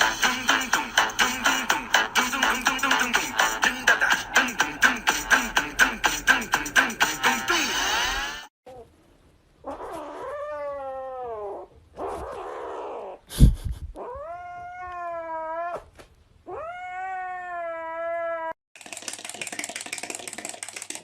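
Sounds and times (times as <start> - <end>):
cat yowling: 9.6 - 13.2, 14.0 - 15.9, 16.5 - 18.6.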